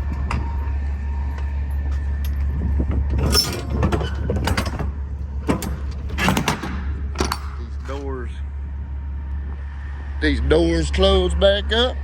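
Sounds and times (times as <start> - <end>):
metal clanks and rattles: 1.4 - 8.2.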